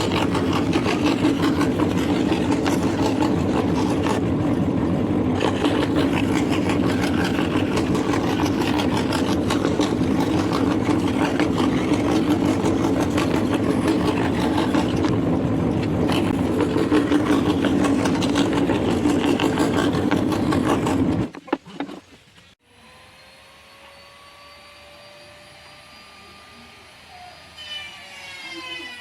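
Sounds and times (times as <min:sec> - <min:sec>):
scroll saw running: 0:00.0 - 0:21.4.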